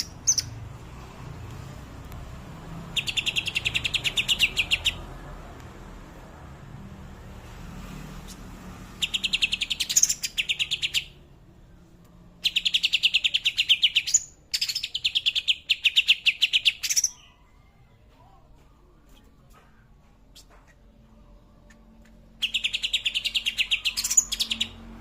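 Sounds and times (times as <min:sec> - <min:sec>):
bird rattling song: 0:21.7 - 0:24.8.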